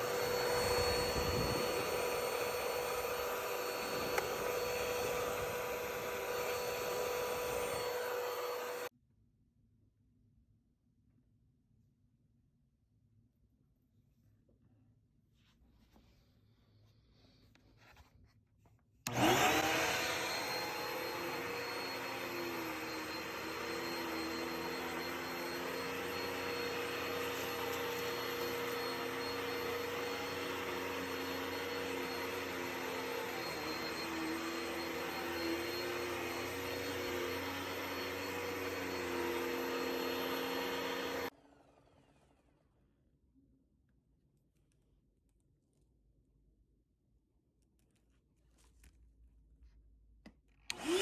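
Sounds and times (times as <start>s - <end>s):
vacuum cleaner motor whine: 0.0s - 8.9s, 19.1s - 42.5s, 50.7s - 51.0s.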